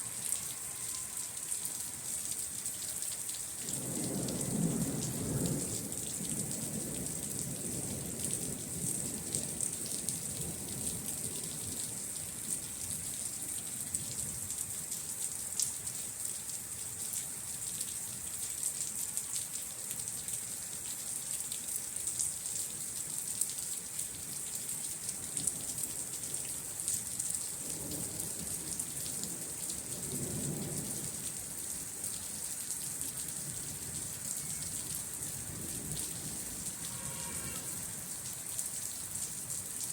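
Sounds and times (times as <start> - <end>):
rain falling: 0.0 - 39.9
thunder rumbling: 3.7 - 10.6.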